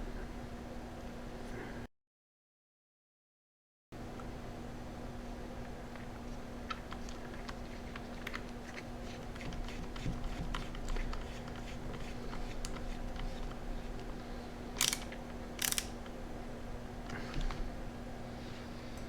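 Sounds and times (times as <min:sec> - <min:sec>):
screwdriver clicking on plastic: 0:09.3 - 0:14.1, 0:14.8 - 0:16.0.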